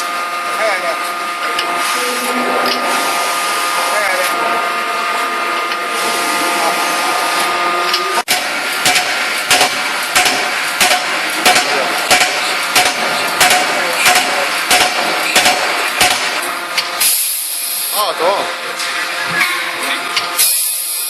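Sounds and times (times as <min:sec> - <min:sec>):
machine noise: 0:00.0 - 0:21.0
forging hammer blows: 0:01.6 - 0:17.3.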